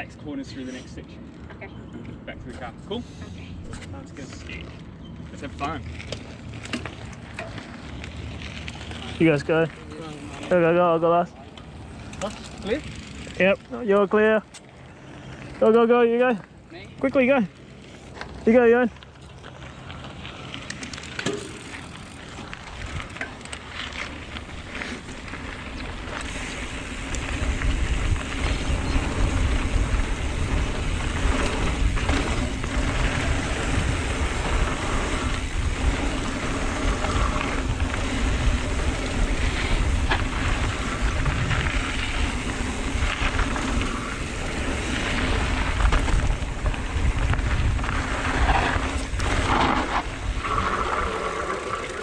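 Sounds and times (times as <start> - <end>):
tyres rumbling over dirt: 4.0 - 52.0
wind rushing over microphone: 24.2 - 52.0.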